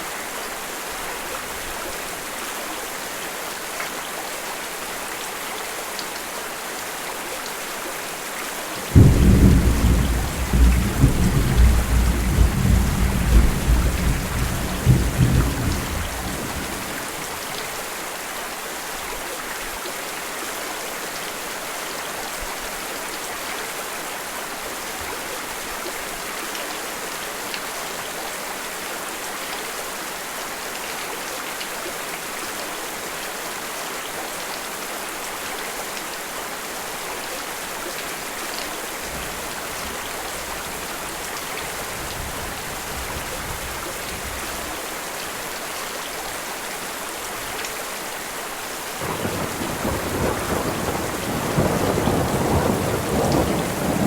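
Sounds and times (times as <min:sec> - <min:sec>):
steady rain: 0:00.0 - 0:54.0
low thunder rumble: 0:08.9 - 0:17.3, 0:49.0 - 0:54.0.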